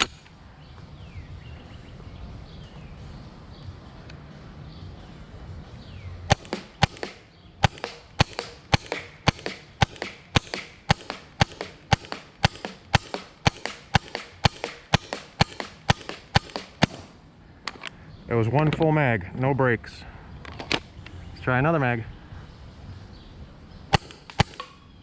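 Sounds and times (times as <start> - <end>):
paintball marker firing shots: 0.0 - 0.3, 6.3 - 17.8, 23.9 - 25.0.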